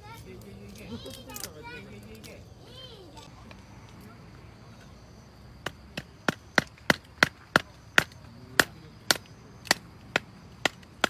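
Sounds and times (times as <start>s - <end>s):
sharp chopping knocks: 5.6s - 11.0s.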